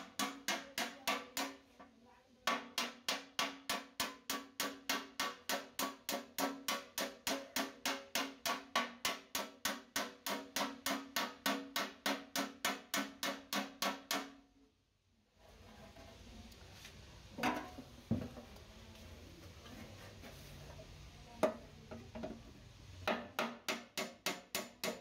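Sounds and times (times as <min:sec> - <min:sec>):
hammer striking metal: 0:00.0 - 0:01.6, 0:23.1 - 0:25.0.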